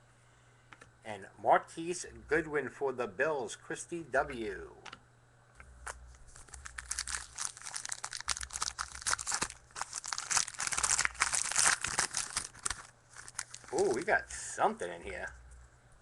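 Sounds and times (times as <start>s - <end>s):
wrapper tearing and crinkling: 5.8s - 14.1s.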